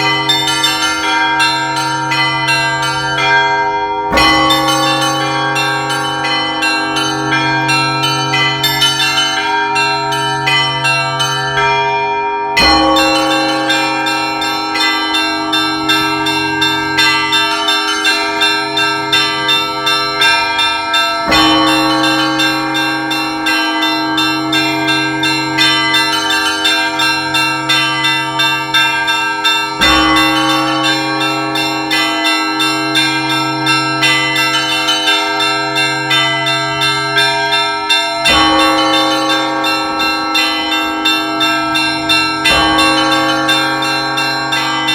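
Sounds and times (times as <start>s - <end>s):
large bell striking: 0.0s - 44.9s.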